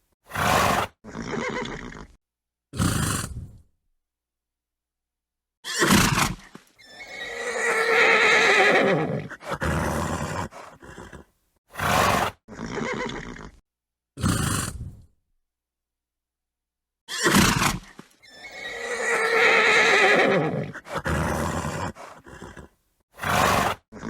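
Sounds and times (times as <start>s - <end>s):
horse neighing: 0.4s - 2.2s, 5.6s - 13.6s, 17.1s - 24.0s.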